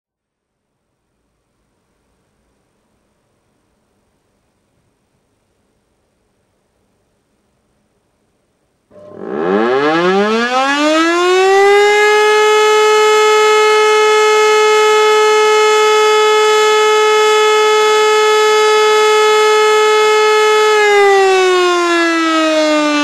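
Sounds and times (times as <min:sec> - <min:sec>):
siren wail: 0:08.9 - 0:23.0.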